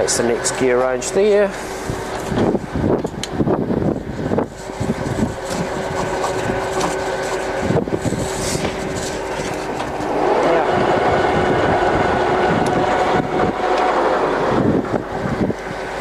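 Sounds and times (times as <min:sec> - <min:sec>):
lathe humming: 0:00.0 - 0:16.0.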